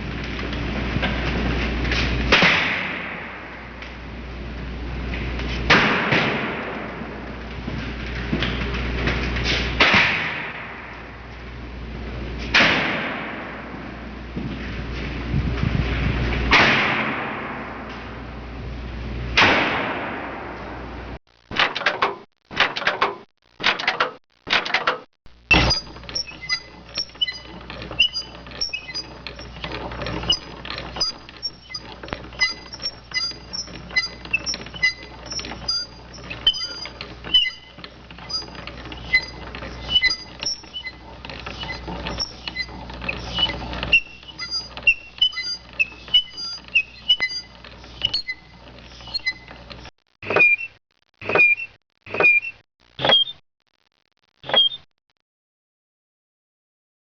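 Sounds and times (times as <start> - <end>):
dense clicking and rattling: 21.5 - 50.2
door creaking: 21.6 - 53.4
short high squeaks: 25.5 - 53.4, 54.4 - 54.9.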